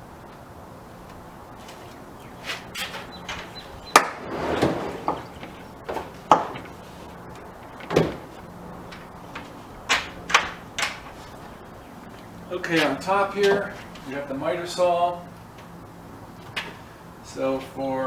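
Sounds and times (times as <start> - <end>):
wooden parts knocking: 3.2 - 11.2
sliding scrape: 4.0 - 7.2.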